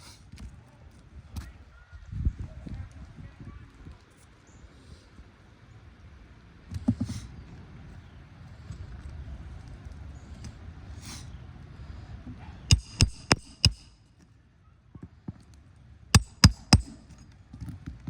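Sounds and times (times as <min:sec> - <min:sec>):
metal-on-metal strikes ringing: 0:12.7 - 0:14.0, 0:16.2 - 0:17.1.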